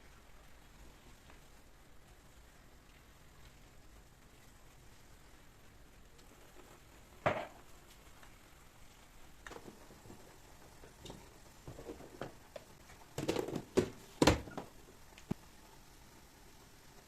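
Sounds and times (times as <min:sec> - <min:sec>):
objects knocking and clattering: 0:07.2 - 0:07.7, 0:09.4 - 0:14.8.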